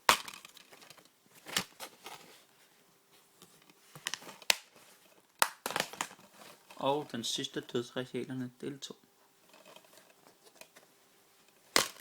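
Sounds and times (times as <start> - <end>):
plastic cases clicking and knocking: 5.4 - 6.3.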